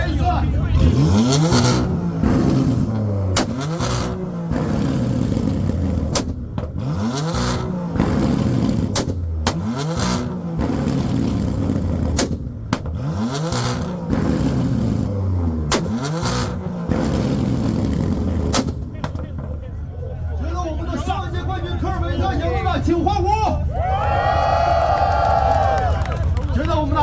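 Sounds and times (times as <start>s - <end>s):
car engines revving: 0.0s - 27.0s
exhaust pops: 0.6s - 20.1s.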